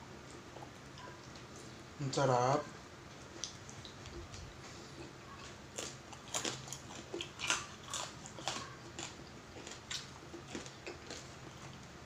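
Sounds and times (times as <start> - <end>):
chewing crisp food: 3.2 - 12.0.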